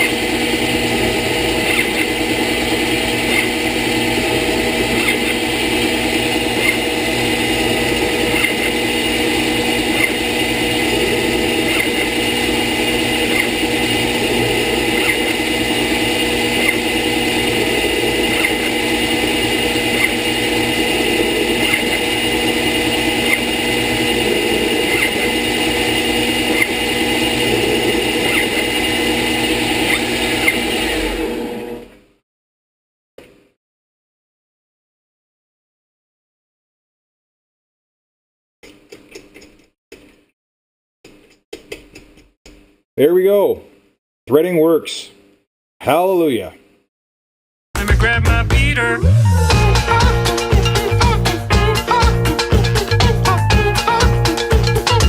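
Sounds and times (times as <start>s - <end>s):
lathe machine drone and whine: 0.0s - 32.0s.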